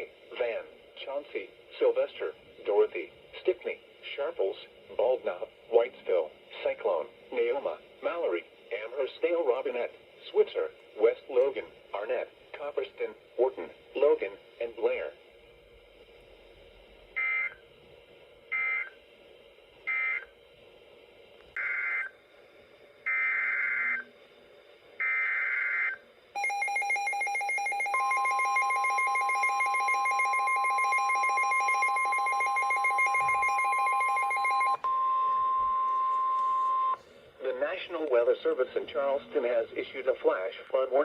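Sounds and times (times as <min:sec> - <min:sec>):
harsh attention signal tone: 0:25.0 - 0:37.0.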